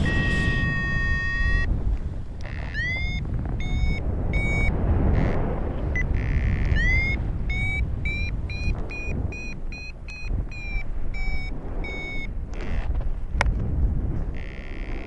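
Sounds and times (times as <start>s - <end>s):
variometer short beeps: 0.0s - 1.7s, 2.4s - 12.4s
wind rumble on microphone: 0.0s - 15.0s.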